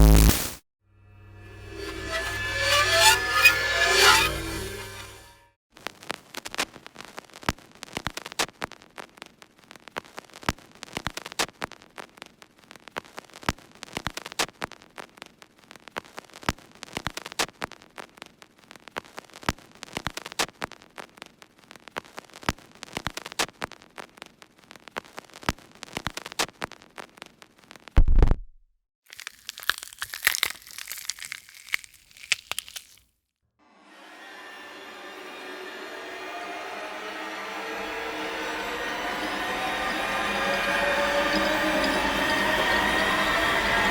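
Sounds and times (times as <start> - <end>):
crackling static: 0.0 - 0.6, 5.8 - 28.0.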